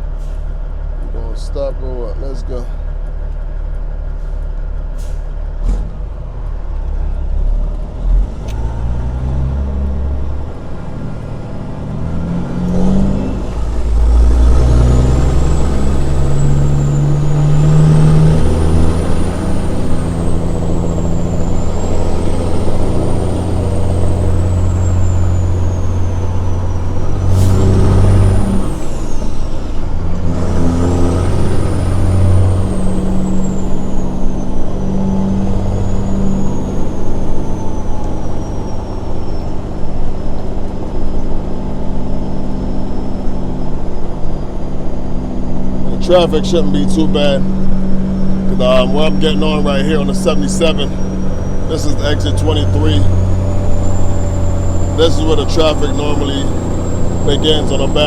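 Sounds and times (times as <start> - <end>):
truck diesel engine accelerating: 0.0 - 58.0
high whine: 31.3 - 58.0.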